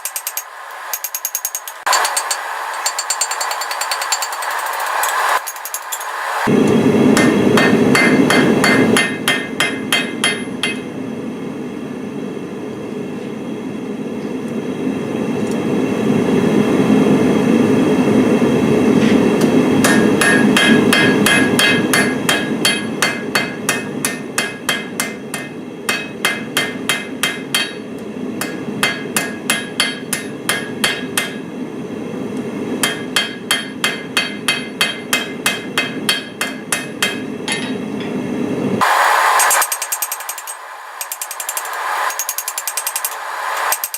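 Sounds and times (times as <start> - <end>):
hammer striking steel on anvil: 0.0 - 6.5, 7.2 - 10.9, 19.4 - 31.4, 32.8 - 38.2, 38.9 - 43.9.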